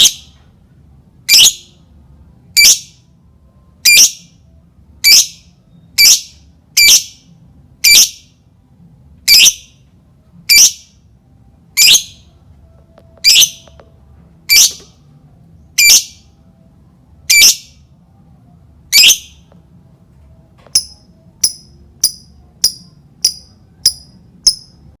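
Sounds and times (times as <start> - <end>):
lovebird chirps: 2.6 - 3.0, 3.8 - 4.3, 5.0 - 7.2, 7.8 - 8.2, 9.3 - 9.8, 10.5 - 10.9, 11.8 - 12.3, 13.2 - 13.8, 14.5 - 14.9, 15.8 - 16.3, 17.3 - 17.8, 18.9 - 19.5, 20.7 - 24.8.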